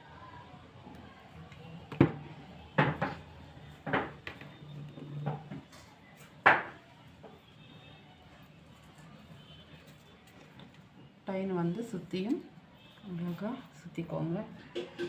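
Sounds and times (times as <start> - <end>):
items knocking on hard surface: 1.9 - 3.2, 3.8 - 4.6.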